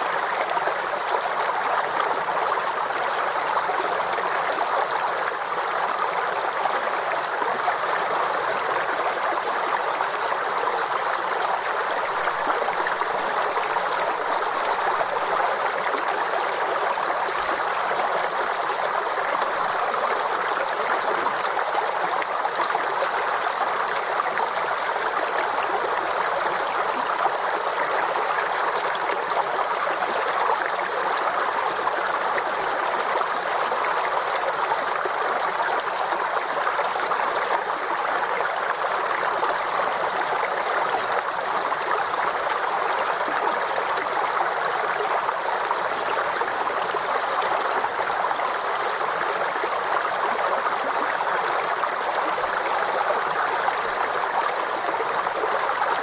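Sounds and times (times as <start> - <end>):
stream gurgling over stones: 0.0 - 56.0.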